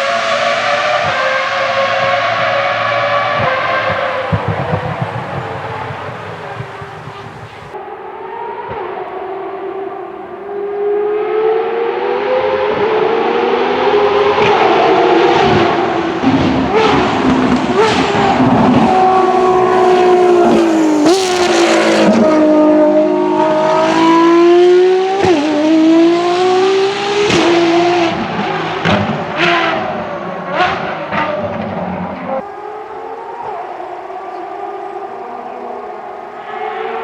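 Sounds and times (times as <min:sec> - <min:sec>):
racing car engine at high revs: 0:00.0 - 0:37.0
engine exhaust cracks: 0:01.9 - 0:07.8.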